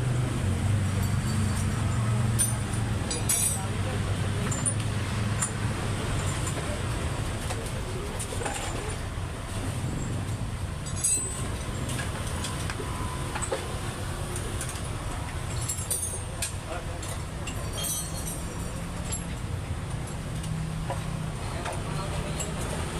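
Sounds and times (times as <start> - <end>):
light metallic clinks: 0.9 - 3.8, 10.8 - 13.5, 15.5 - 19.4.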